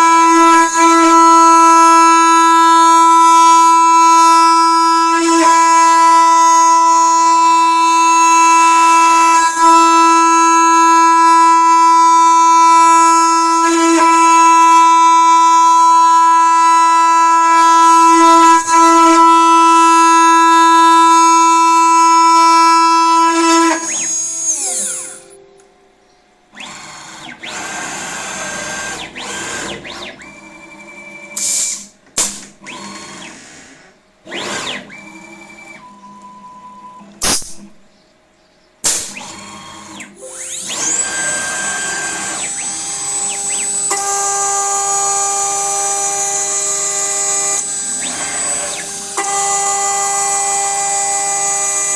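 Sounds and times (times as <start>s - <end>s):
router spindle whining: 0.0s - 25.4s, 26.4s - 36.3s, 38.9s - 51.9s.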